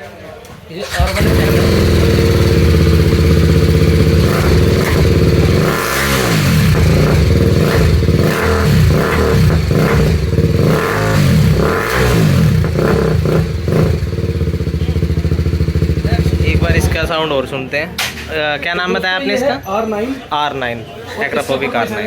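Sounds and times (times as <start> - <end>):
motorcycle engine revving: 0.8 - 17.2.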